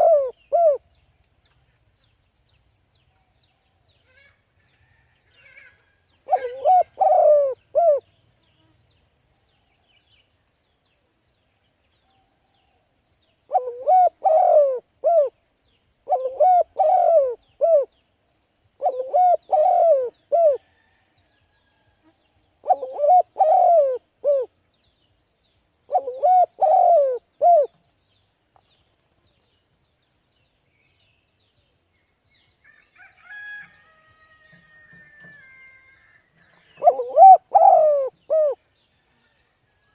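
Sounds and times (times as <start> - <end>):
dove cooing: 0.0 - 0.8, 5.4 - 8.1, 13.5 - 15.4, 16.0 - 17.9, 18.8 - 20.6, 22.6 - 24.5, 25.9 - 27.8, 34.9 - 38.6.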